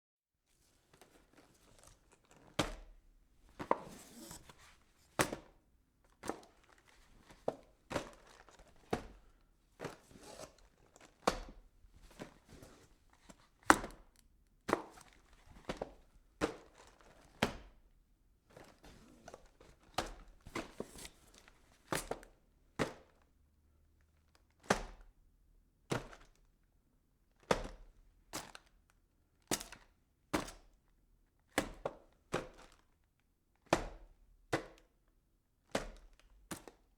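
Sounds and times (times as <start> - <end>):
cardboard rustling and scraping: 3.5 - 5.4, 6.4 - 11.2, 20.4 - 21.5.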